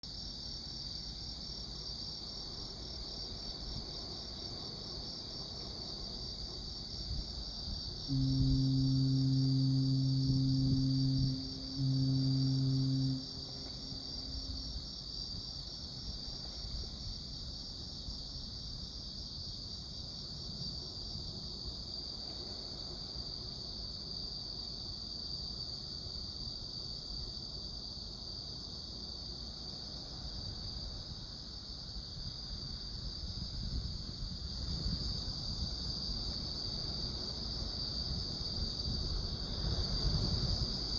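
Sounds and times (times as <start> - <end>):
insects chirring: 0.1 - 19.5
ship's horn blast: 8.1 - 15.0.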